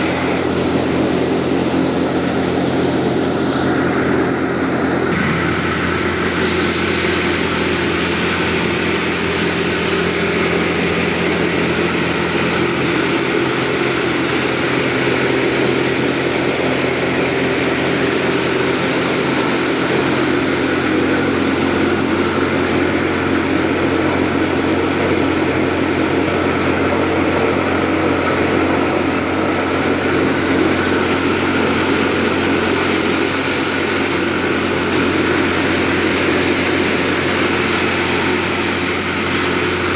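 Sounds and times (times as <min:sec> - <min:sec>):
dense rushing noise: 0:00.0 - 0:17.0
machinery droning: 0:00.0 - 0:39.9
low hum: 0:03.0 - 0:12.4.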